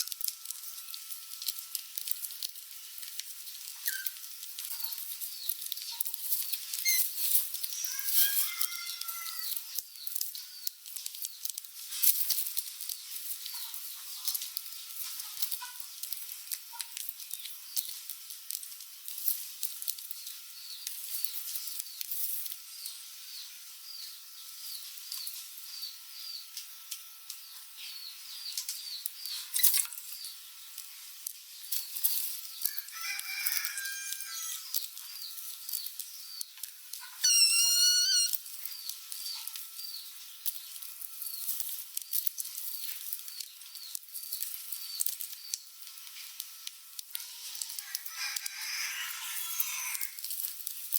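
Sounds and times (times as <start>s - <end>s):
rats scuffling and scratching: 0.0s - 22.6s, 27.8s - 50.9s
rats squeaking: 3.8s - 10.8s, 31.7s - 40.6s, 47.1s - 50.3s
loud wavering squeal: 33.6s - 34.7s, 37.2s - 38.4s, 47.2s - 50.2s.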